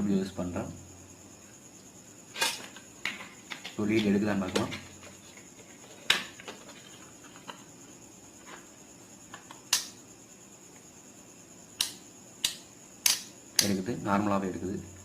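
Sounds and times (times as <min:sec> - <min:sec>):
multimeter probes clicking: 0:09.3 - 0:10.0, 0:11.8 - 0:13.8.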